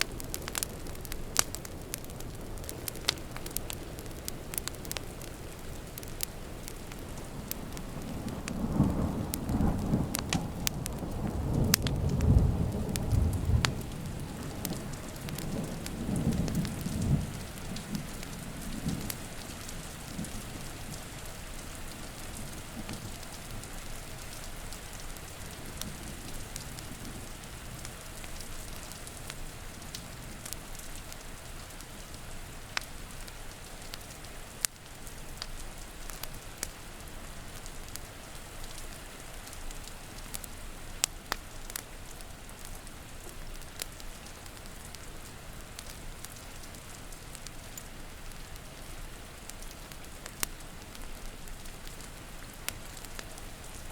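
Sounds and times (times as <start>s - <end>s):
steady rain: 0.0s - 53.9s
wood fire crackling: 0.0s - 53.9s
low rumble of thunder: 6.6s - 28.9s.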